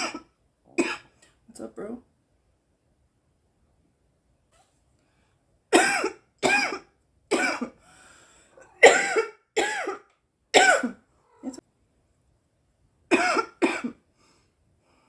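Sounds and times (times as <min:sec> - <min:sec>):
girl coughing: 0:00.0 - 0:01.1, 0:05.7 - 0:07.7, 0:08.8 - 0:11.0, 0:13.1 - 0:14.0
faint breath: 0:05.0 - 0:05.6, 0:07.8 - 0:08.8, 0:14.1 - 0:15.0.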